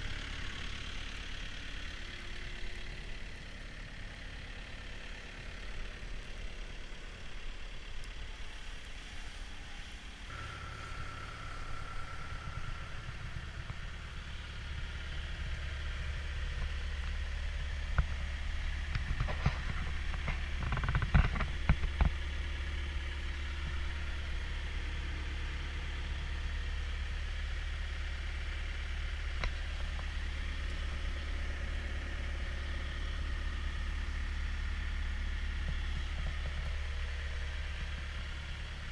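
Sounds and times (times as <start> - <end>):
diesel engine running: 0.0 - 38.9
short steady tone: 10.3 - 15.6.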